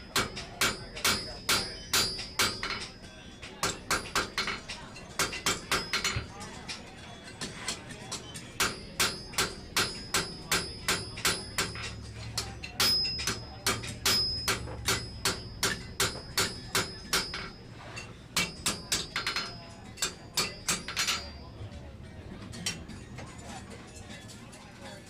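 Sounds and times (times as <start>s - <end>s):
hammer striking steel on anvil: 0.0s - 6.3s, 7.7s - 21.4s.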